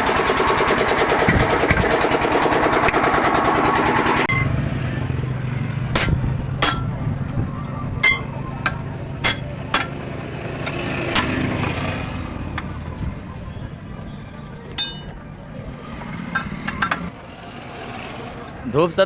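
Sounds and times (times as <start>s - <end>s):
metal tool clinking on steel: 4.3s - 4.7s, 6.0s - 7.0s, 8.0s - 11.8s, 14.8s - 15.2s.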